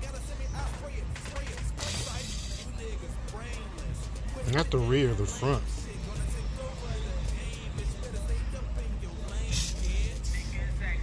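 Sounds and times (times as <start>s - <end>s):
aerosol can spray hiss: 1.8s - 2.7s, 9.5s - 10.0s.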